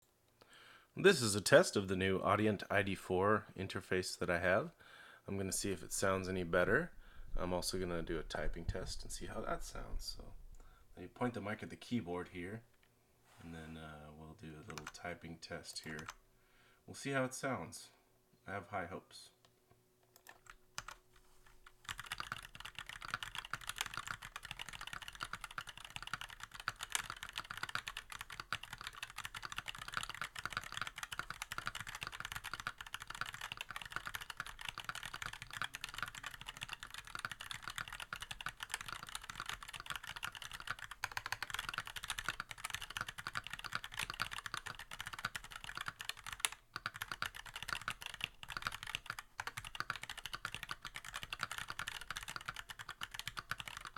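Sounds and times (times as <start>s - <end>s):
keyboard typing: 14.7s - 15.0s, 20.0s - 21.0s, 21.6s - 53.9s.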